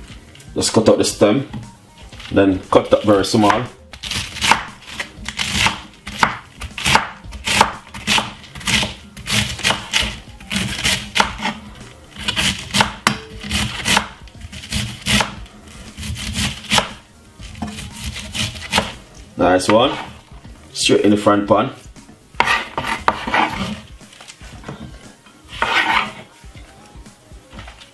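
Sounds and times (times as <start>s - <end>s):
knife chopping cabbage on board: 3.4s - 11.6s, 12.2s - 15.4s, 16.0s - 19.0s, 19.7s - 20.2s, 22.4s - 23.8s.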